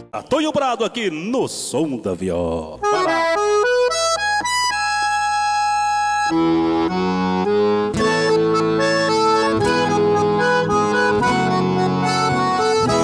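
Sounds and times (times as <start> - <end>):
accordion playing: 2.8 - 13.0.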